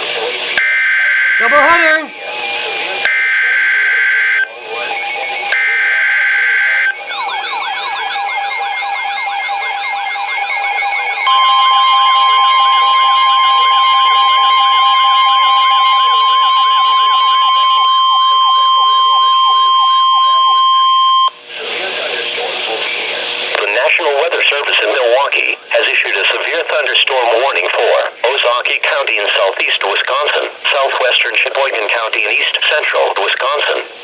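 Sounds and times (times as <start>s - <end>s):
steady warning alarm tone: 0.6s - 21.3s
siren with rising sweeps: 6.1s - 20.2s.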